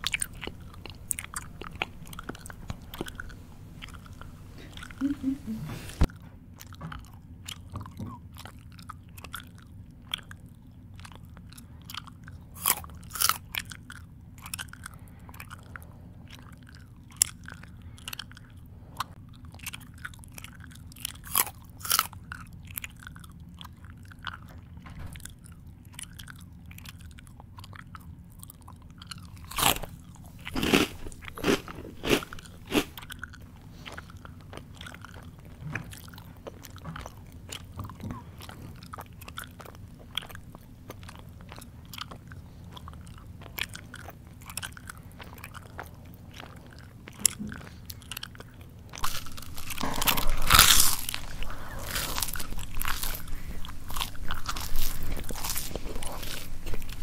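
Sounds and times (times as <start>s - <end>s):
faint low hum: 0.0s - 57.0s
person chewing crunchy food: 0.0s - 57.0s.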